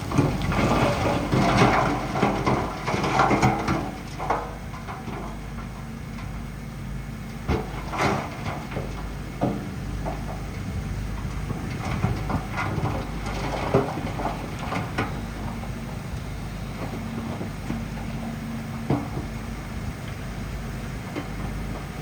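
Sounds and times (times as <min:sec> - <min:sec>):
scraping and grinding: 0:00.0 - 0:04.4
bulldozer diesel engine under load: 0:00.0 - 0:22.0.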